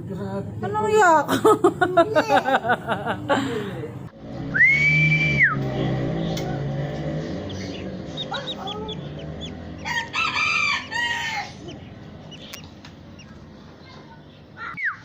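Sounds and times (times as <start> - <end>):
small birds chirping: 5.2 - 15.0
rooster crowing: 7.5 - 12.3.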